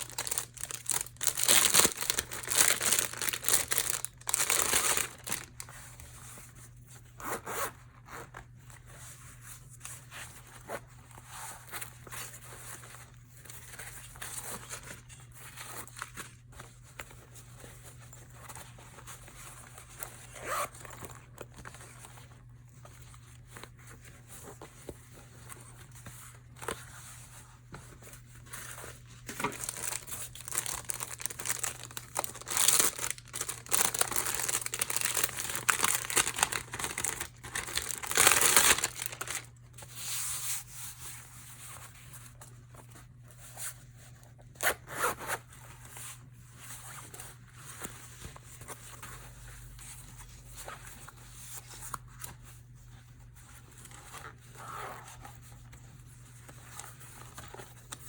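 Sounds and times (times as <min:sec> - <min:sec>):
packaging crinkling and tearing: 0:00.0 - 0:05.8, 0:29.2 - 0:39.6.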